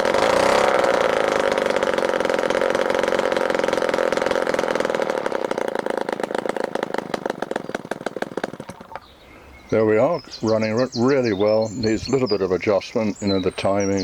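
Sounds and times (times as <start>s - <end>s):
model petrol engine running: 0.0s - 9.0s.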